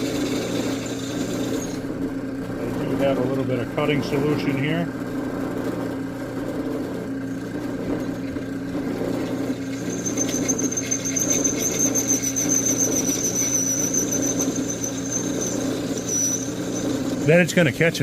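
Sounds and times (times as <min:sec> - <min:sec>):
drill bit squealing on steel: 0:00.0 - 0:01.9, 0:07.9 - 0:17.5
drill press motor humming: 0:00.0 - 0:17.5.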